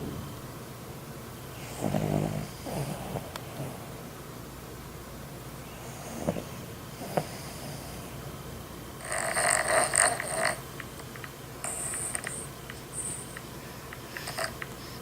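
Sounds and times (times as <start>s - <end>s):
person snoring: 9.0s - 10.6s.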